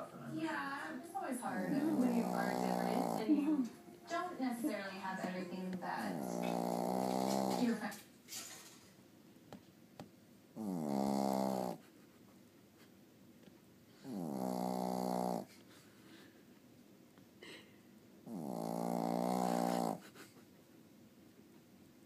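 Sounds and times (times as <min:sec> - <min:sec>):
pet snoring: 0:01.5 - 0:03.7, 0:04.7 - 0:07.9, 0:10.6 - 0:11.8, 0:14.0 - 0:15.5, 0:18.2 - 0:20.1.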